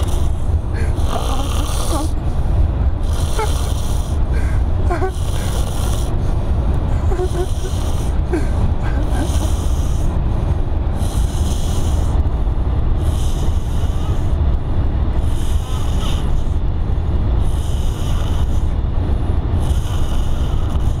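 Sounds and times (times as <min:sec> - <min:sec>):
man snoring: 0:00.0 - 0:02.2, 0:03.0 - 0:04.2, 0:04.9 - 0:06.2, 0:07.0 - 0:08.2, 0:15.2 - 0:16.4, 0:17.5 - 0:18.7, 0:19.6 - 0:21.0
steady low rumble: 0:00.0 - 0:21.0.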